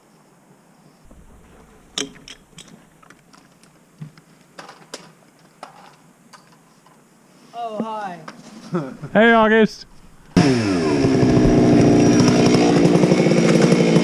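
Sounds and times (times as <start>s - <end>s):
light clicks and knocks: 1.1s - 4.2s.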